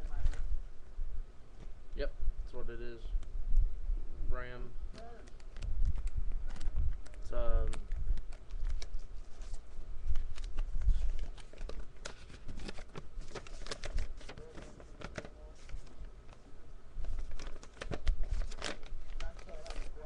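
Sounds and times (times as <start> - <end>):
packaging clicks taps and rustles: 17.0 - 20.0.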